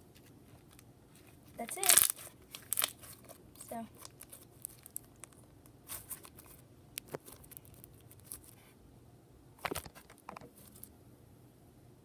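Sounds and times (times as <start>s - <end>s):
slime crackling and popping: 1.6s - 8.6s.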